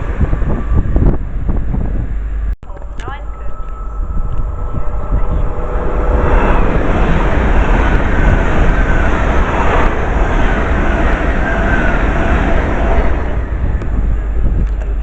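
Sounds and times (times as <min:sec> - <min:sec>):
train passing at speed: 0:00.0 - 0:15.0
wind rumble on microphone: 0:00.0 - 0:15.0
faint whining tones: 0:02.1 - 0:10.0.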